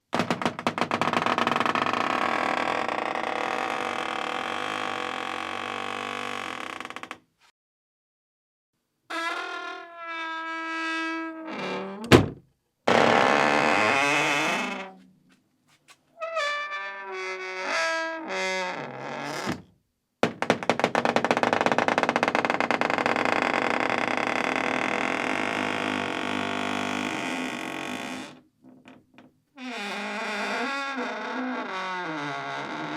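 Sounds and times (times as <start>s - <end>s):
wooden door creaking: 0.1s - 7.2s, 9.1s - 15.0s, 16.2s - 32.9s
door shutting knock: 12.0s - 12.4s.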